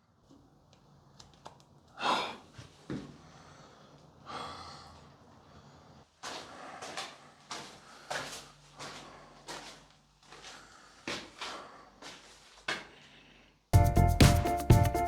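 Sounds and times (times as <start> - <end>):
man breathing and sighing: 2.0 - 9.6.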